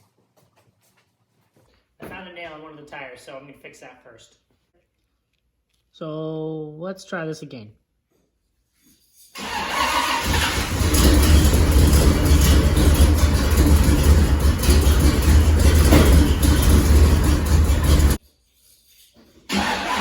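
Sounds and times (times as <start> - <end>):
engine cranking and starting: 9.4 - 18.2, 19.5 - 20.0
engine running with deep rumble: 9.4 - 18.2.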